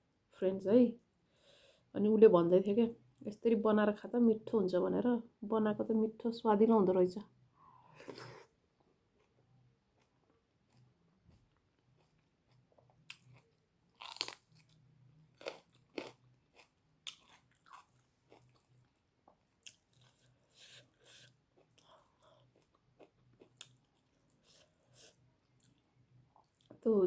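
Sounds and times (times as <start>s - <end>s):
chewing food with crunches: 8.8s - 26.8s.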